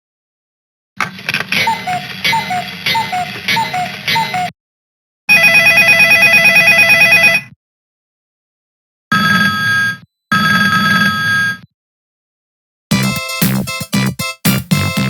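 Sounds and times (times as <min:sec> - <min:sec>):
synth ringtone melody: 0:01.6 - 0:04.5.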